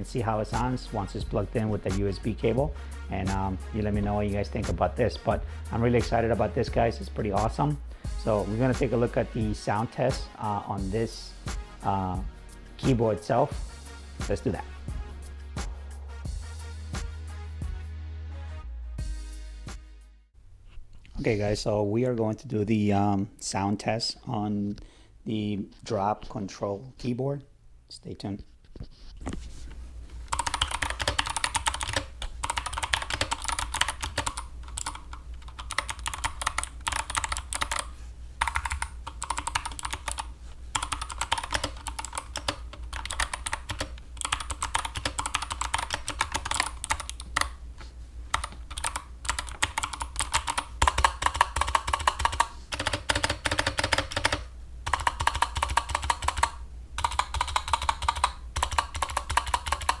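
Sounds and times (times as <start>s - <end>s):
fast typing on clicky keyboard: 30.3s - 47.6s, 48.3s - 60.0s.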